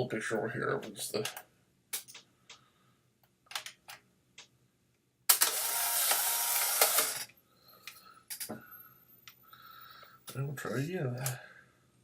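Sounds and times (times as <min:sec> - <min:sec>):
camera film ejection motor: 0:05.3 - 0:07.2.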